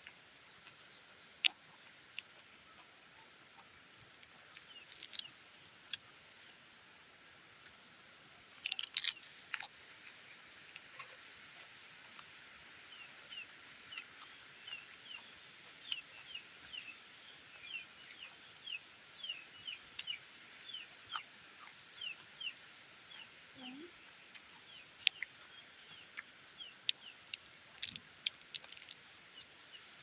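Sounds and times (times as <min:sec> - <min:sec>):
small bird chirping: 0:04.0 - 0:05.4, 0:12.9 - 0:29.9
chewing crunches: 0:04.0 - 0:06.1, 0:08.4 - 0:11.2, 0:24.3 - 0:29.6.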